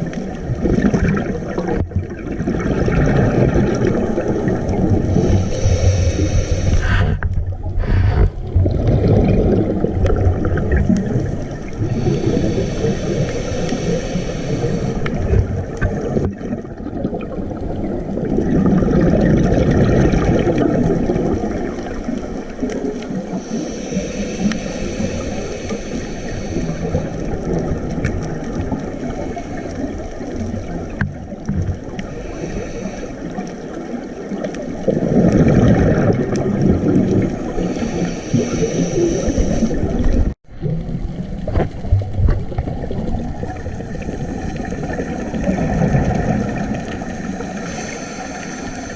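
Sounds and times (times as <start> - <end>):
gurgling exhaled bubbles: 0.0 - 48.9
regulator hissing inhale: 5.0 - 7.2, 11.8 - 15.4, 23.3 - 27.5, 29.0 - 30.3, 32.0 - 33.8, 37.4 - 40.1, 43.6 - 45.5, 46.8 - 48.9.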